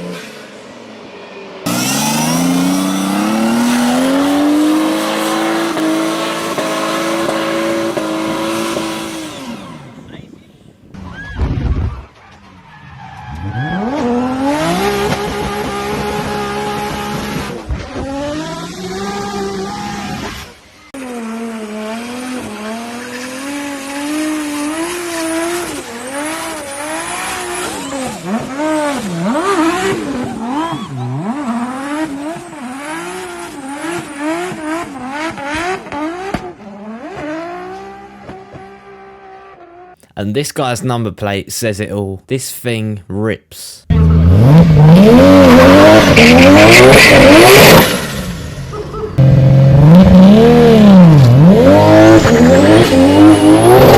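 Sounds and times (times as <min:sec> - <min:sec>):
car engine revving: 0:01.7 - 0:10.0, 0:43.9 - 0:53.9.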